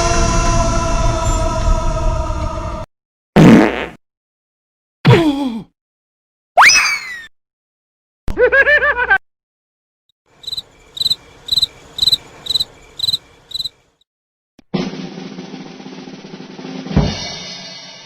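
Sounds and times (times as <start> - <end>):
cricket chirping: 10.4 - 13.9
bass drum and cymbal hit: 14.9 - 18.0.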